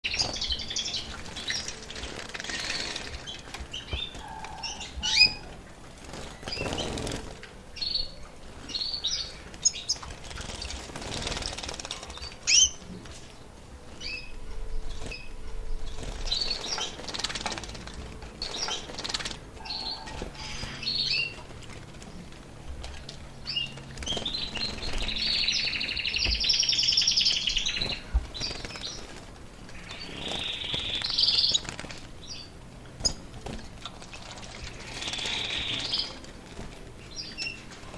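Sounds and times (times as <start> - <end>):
canary trilled song: 0.0 - 13.4, 23.4 - 33.2
canaries chirping: 0.0 - 37.9
wings fluttering: 0.1 - 7.7, 8.4 - 13.4, 14.9 - 37.9.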